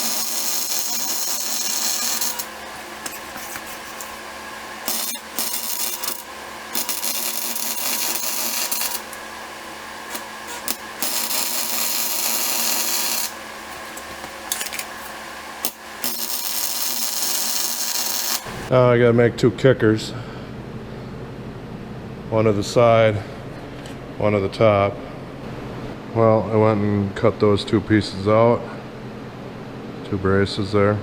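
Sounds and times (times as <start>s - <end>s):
arc welder hissing: 0.0s - 18.7s.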